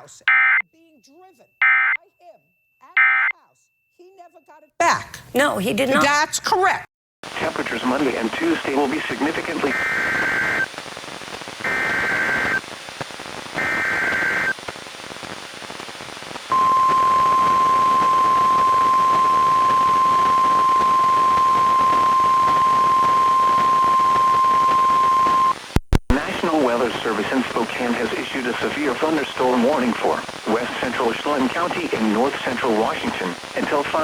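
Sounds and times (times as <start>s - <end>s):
radio reception hiss: 7.2s - 34.0s
warbling digital data bursts: 11.6s - 12.6s
steady warning alarm tone: 11.7s - 12.6s, 13.6s - 14.5s, 16.5s - 25.6s.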